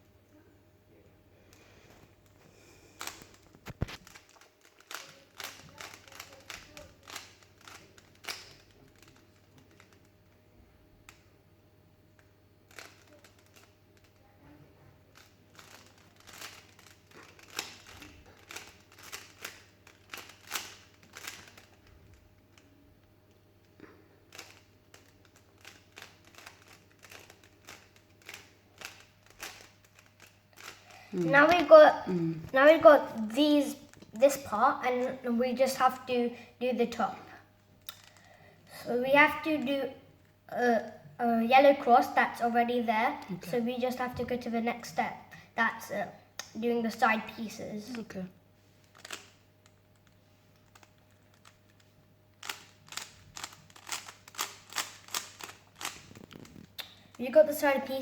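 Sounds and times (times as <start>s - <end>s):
plastic puzzle cube clicks: 3.0s - 10.0s, 15.2s - 21.8s, 24.3s - 30.9s, 48.9s - 57.0s.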